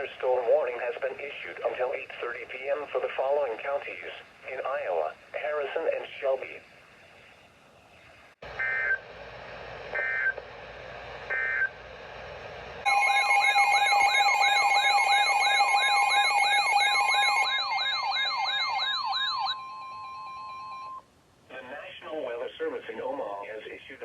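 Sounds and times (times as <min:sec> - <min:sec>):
steady warning alarm tone: 0:08.5 - 0:09.0, 0:09.9 - 0:10.4, 0:11.3 - 0:11.8, 0:12.9 - 0:21.0
warbling siren: 0:10.0 - 0:10.3, 0:12.9 - 0:21.0.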